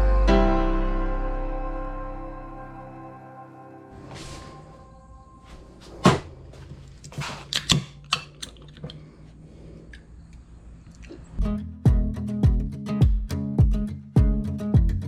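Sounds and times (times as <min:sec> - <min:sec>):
faint low hum: 0:01.1 - 0:11.4
tools clicking and knocking: 0:07.0 - 0:09.0.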